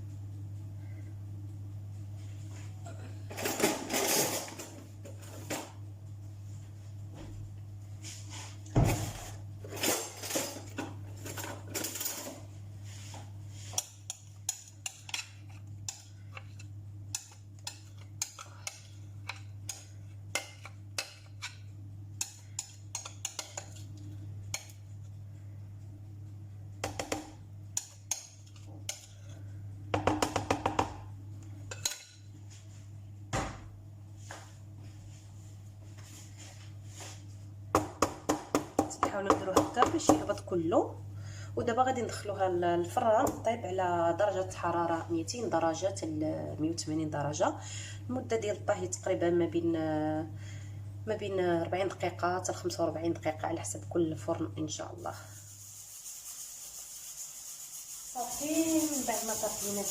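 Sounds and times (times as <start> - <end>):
steady low hum: 0.0 - 59.9
utensil scraping mixing bowl: 55.0 - 59.9.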